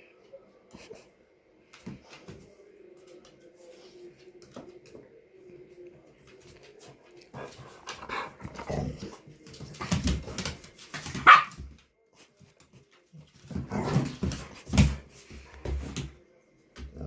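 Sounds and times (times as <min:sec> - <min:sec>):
dogs barking and growling: 0:07.4 - 0:09.2, 0:11.2 - 0:11.6
loud sharp dog bark: 0:11.2 - 0:11.5.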